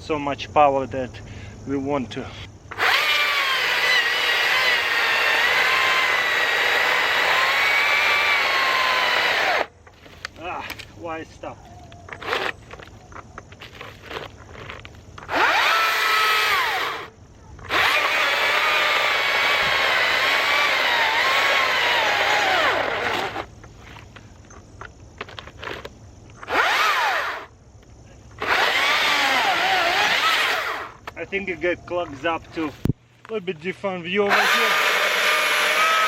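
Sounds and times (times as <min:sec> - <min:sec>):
electric chainsaw cutting log: 0:02.7 - 0:09.7, 0:15.2 - 0:17.1, 0:17.7 - 0:23.5, 0:26.4 - 0:27.5, 0:28.4 - 0:31.0, 0:34.3 - 0:36.0.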